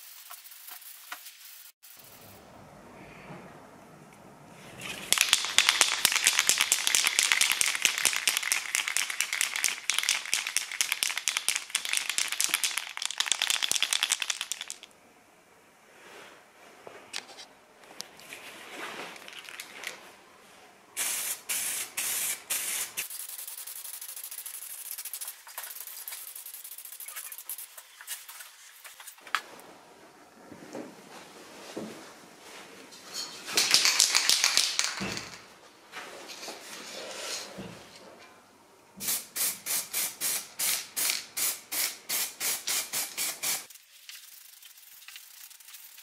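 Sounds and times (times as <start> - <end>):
spray paint hissing bursts: 0.0 - 2.2, 21.0 - 28.4, 39.0 - 46.0
spray can ball rattling: 5.0 - 14.9, 21.0 - 29.2, 33.6 - 35.4, 39.0 - 46.0.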